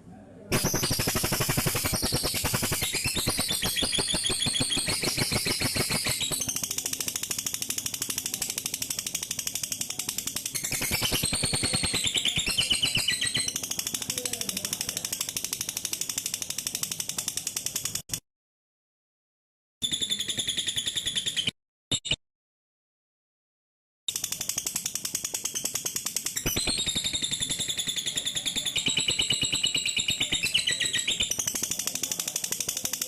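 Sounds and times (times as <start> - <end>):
lovebird chattering trill: 0.5 - 18.1, 24.1 - 33.0.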